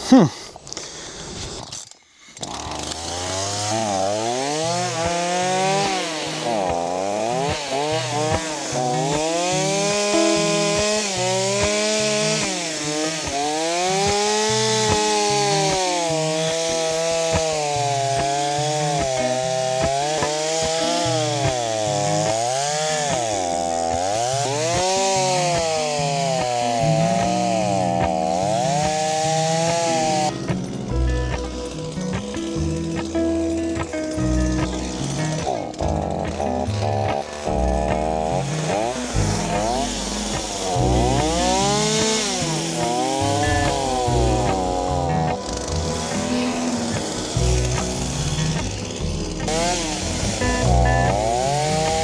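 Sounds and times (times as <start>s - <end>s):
chainsaw cutting logs: 0.0s - 52.0s.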